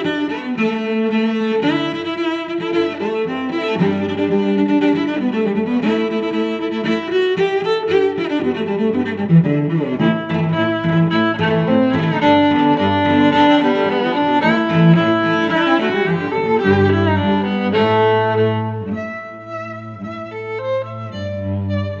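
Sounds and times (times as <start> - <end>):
violin and cello music: 0.0 - 22.0.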